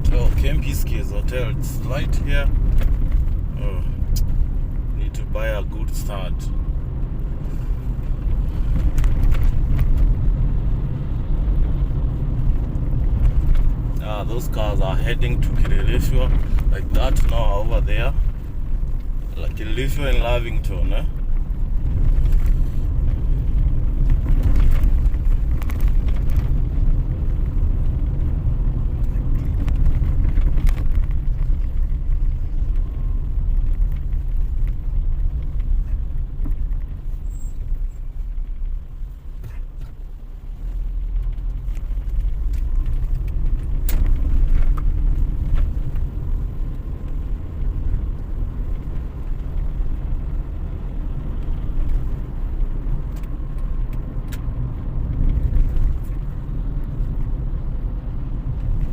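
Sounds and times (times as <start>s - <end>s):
car road and engine rumble: 0.0s - 58.9s.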